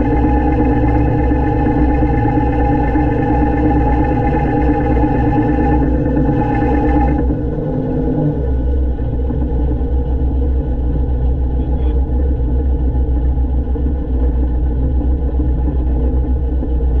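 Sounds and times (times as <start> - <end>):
diesel excavator engine rumbling: 0.0 - 16.7.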